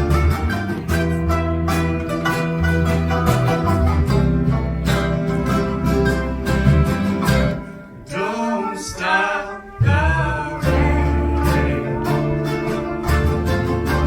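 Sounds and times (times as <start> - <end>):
live band with heavy bass: 0.0 - 8.1, 9.7 - 14.0
guitar: 0.0 - 14.0
person singing: 8.1 - 14.0.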